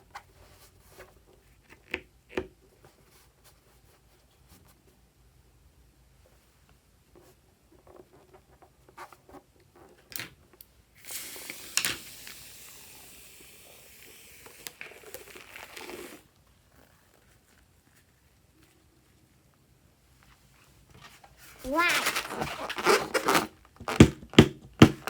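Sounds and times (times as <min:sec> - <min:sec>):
steady hiss: 0:11.0 - 0:16.3.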